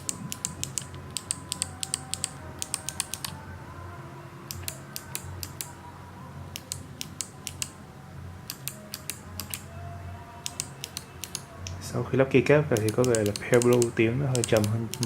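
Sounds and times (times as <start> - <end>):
mechanical keyboard switches clicking: 0.0 - 3.4, 4.5 - 5.8, 6.6 - 7.8, 8.5 - 9.6, 10.4 - 11.8, 12.8 - 15.0.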